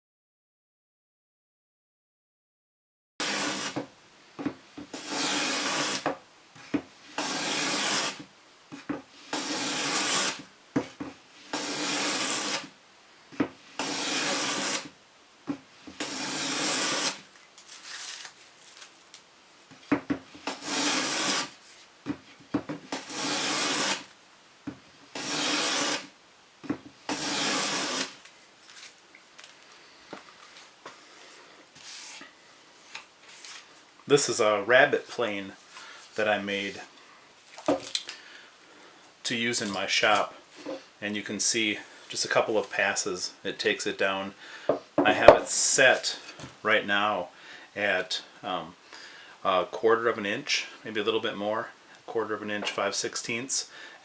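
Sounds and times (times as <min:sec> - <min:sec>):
hand plane rasping along board: 0:03.2 - 0:03.9, 0:04.9 - 0:06.1, 0:07.1 - 0:08.2, 0:09.2 - 0:10.4, 0:11.4 - 0:12.7, 0:13.7 - 0:14.9, 0:15.9 - 0:17.2, 0:20.4 - 0:21.5, 0:22.9 - 0:24.0, 0:25.1 - 0:26.0, 0:27.1 - 0:28.1.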